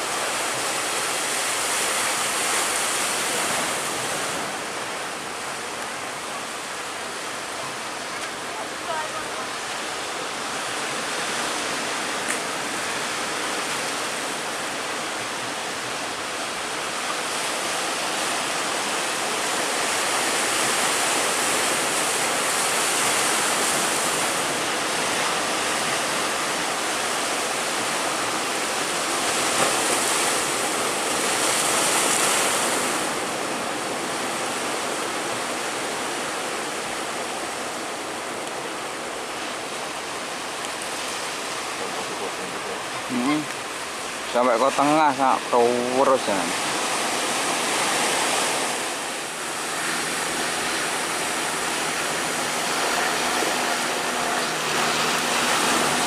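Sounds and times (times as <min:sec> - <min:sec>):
ocean surf breaking: 0:00.0 - 0:56.0.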